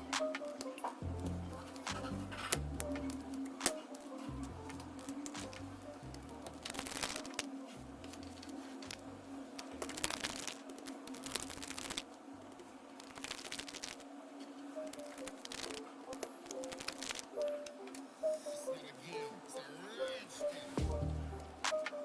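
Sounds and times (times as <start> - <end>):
sharp snaps: 0.0 - 1.0, 1.7 - 4.0, 4.7 - 7.5, 20.8 - 22.0
steady low hum: 0.0 - 10.4
clicks and crinkling handling: 1.6 - 18.0.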